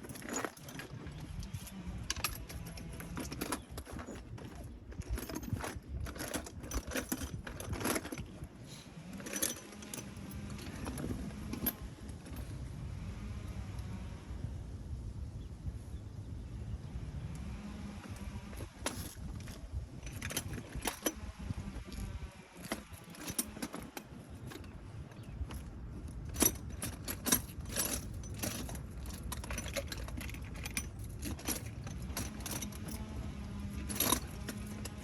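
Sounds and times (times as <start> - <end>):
metal hand tools clinking: 0.0 - 8.5, 9.1 - 12.5, 22.6 - 35.0
low steady rumble: 0.0 - 35.0.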